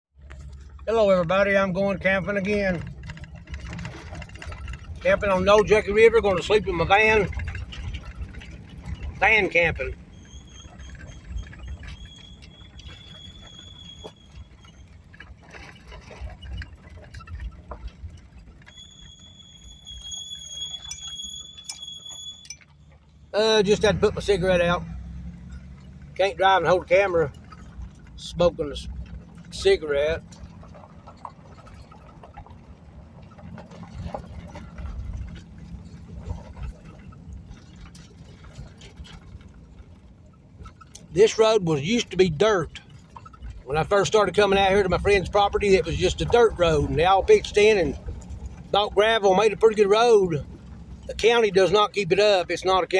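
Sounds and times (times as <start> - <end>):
gravel crackling under tyres: 0.0 - 52.9
van road rumble: 0.0 - 52.9
light clicks and rattles: 1.8 - 18.9
high-pitched squeal: 18.7 - 22.6.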